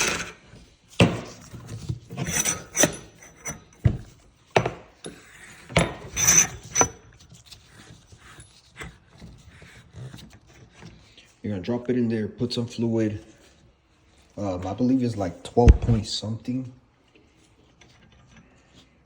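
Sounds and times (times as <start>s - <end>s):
scraping and rubbing: 0.0s - 4.3s, 5.1s - 11.4s.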